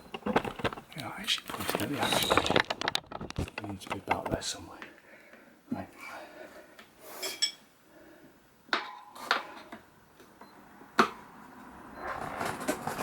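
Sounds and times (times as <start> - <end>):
tyre rubbing and scraping: 0.0 - 4.4, 12.0 - 13.0.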